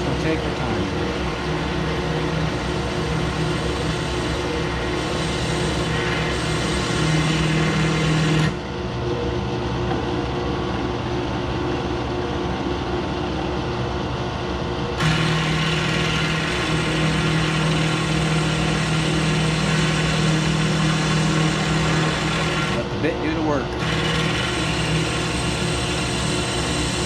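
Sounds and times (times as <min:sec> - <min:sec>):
drill bit cutting: 0:00.0 - 0:08.7, 0:15.0 - 0:27.0
drill motor hum: 0:00.0 - 0:09.0, 0:15.0 - 0:27.0.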